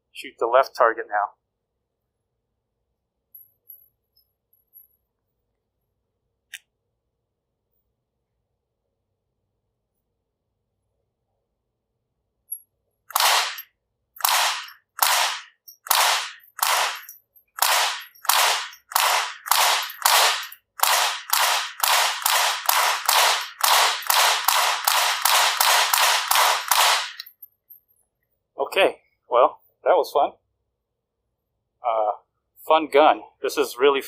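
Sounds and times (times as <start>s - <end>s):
rifle shots: 13.1s - 13.6s, 14.2s - 27.2s.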